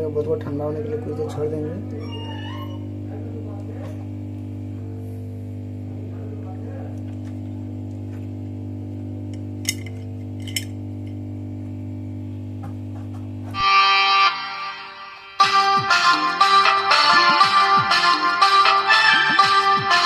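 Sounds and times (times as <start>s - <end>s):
loud bright music: 13.6s - 20.0s.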